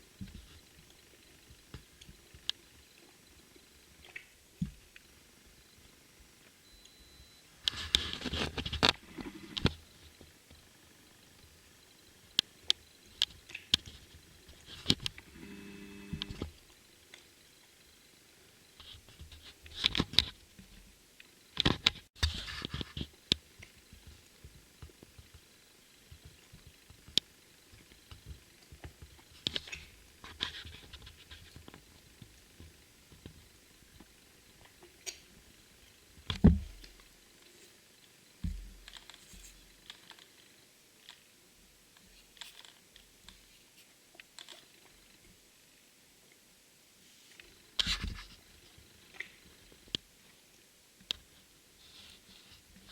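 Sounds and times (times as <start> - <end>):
faint ticks: 0.1 - 18.0, 18.6 - 41.3, 41.9 - 45.4
light clicks and taps: 26.1 - 35.3.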